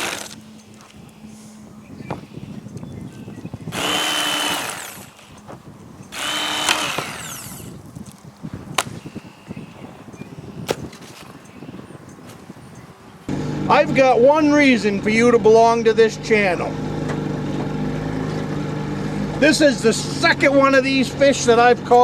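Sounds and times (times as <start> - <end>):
small electric motor whining: 0.0 - 0.4, 3.6 - 5.5, 6.1 - 7.8.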